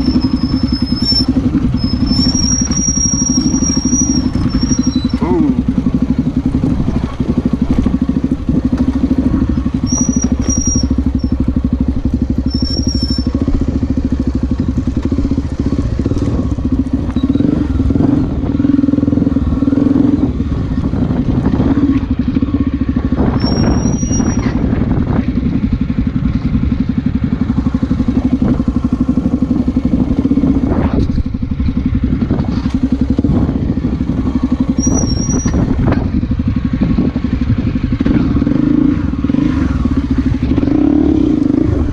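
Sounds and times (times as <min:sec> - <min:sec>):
short high squeaks: 0:00.0 - 0:05.2, 0:09.8 - 0:11.4, 0:12.4 - 0:13.4, 0:23.4 - 0:24.6, 0:34.7 - 0:35.7
motorcycle engine under load: 0:00.0 - 0:41.9.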